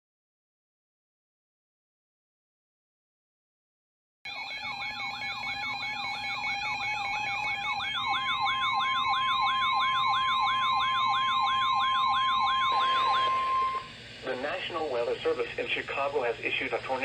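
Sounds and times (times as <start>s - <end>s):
electronic siren yelping: 4.3s - 13.9s
steady electronic tones: 4.3s - 14.3s.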